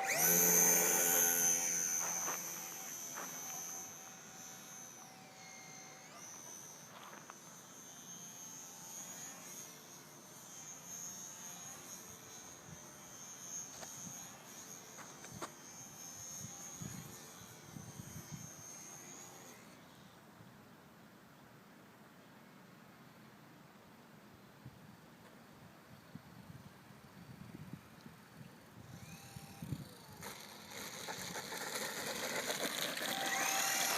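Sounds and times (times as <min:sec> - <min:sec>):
model plane electric motor buzzing: 0:00.0 - 0:20.1, 0:27.6 - 0:33.9
thin high whine: 0:00.0 - 0:20.1, 0:28.6 - 0:33.9.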